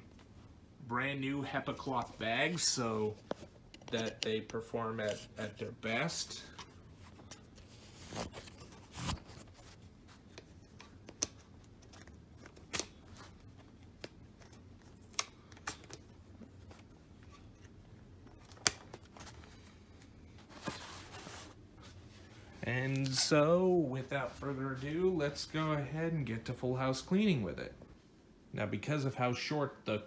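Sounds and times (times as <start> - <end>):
faint steady hum: 0.0 - 30.0
soft rustling: 15.9 - 26.0.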